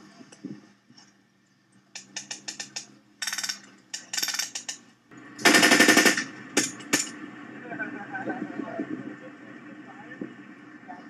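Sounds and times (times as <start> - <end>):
airsoft gun full-auto bursts: 5.4 - 6.3.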